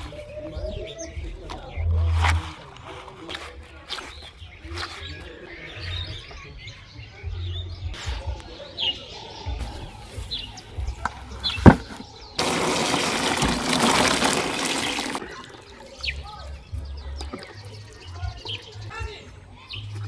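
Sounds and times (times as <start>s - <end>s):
water running from tap: 12.4s - 15.2s.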